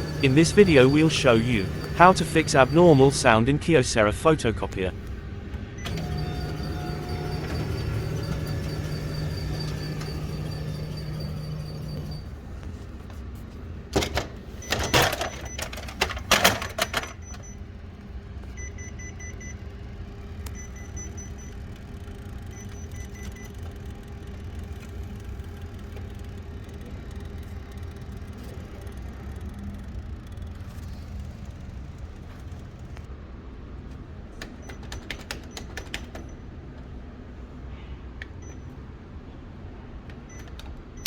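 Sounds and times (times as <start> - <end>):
photocopier clicks and knocks: 0.0 - 3.2, 5.8 - 12.3
photocopier humming: 0.0 - 3.8, 4.4 - 13.2, 14.0 - 33.0.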